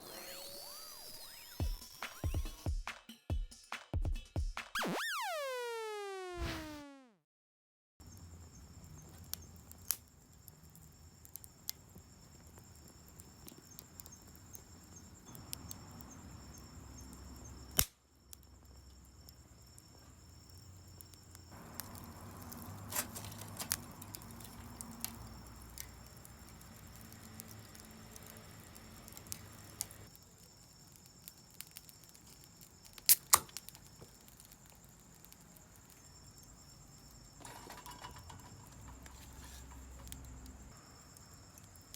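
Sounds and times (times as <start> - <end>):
campfire crackling and popping: 8.8 - 39.1.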